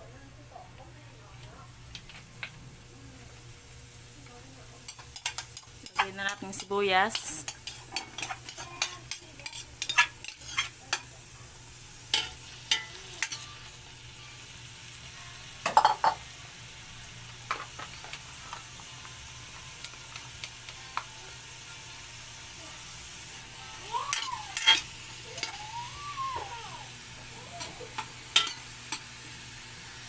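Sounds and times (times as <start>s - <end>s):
onion sizzling in oil: 1.4s - 30.0s
utensil scraping pan: 4.9s - 10.8s.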